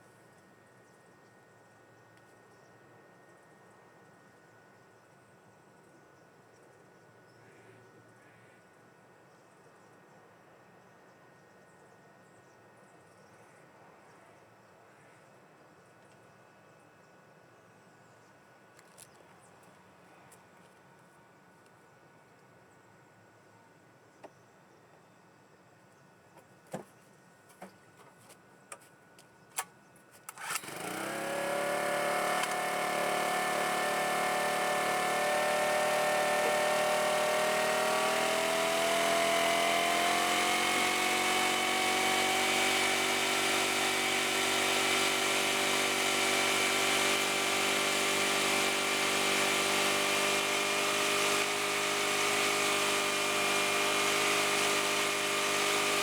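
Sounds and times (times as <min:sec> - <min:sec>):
portable generator engine running: 0:30.4 - 0:56.0.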